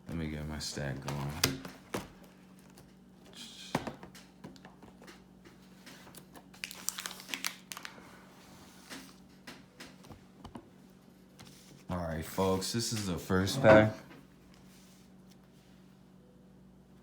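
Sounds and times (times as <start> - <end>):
plastic wrapper crinkling: 6.0 - 8.2.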